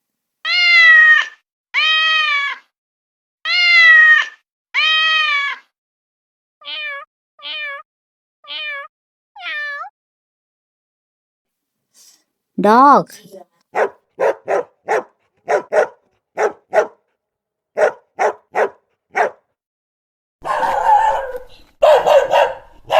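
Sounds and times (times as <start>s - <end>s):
cat meowing: 0.4s - 2.7s, 3.5s - 5.7s, 6.6s - 7.8s, 8.4s - 9.9s.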